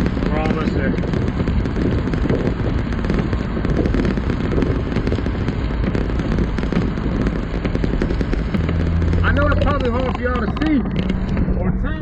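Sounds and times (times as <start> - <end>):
heavy rain on a vehicle roof: 0.0 - 11.6
low rumble: 0.0 - 12.0.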